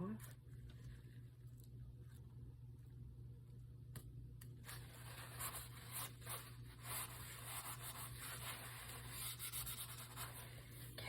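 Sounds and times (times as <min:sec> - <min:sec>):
paper towel scrubbing: 0:04.7 - 0:10.7.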